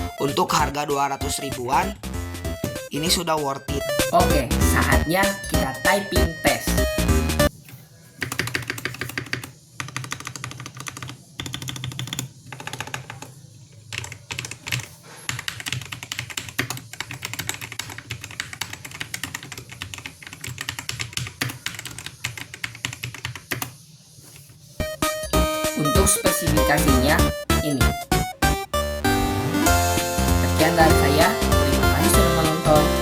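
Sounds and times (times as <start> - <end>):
fast typing on mechanical keyboard: 8.2 - 23.8.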